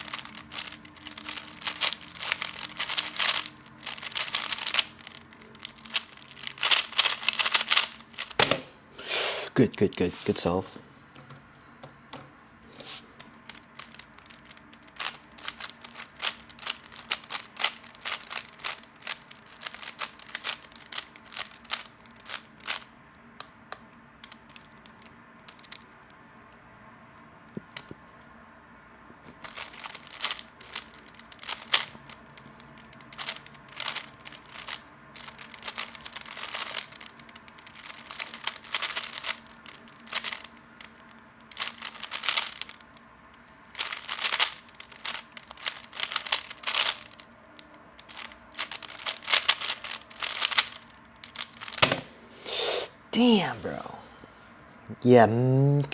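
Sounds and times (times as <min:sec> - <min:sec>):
puzzle cube plastic clicks: 0:00.0 - 0:08.6, 0:12.8 - 0:25.9, 0:29.3 - 0:52.1.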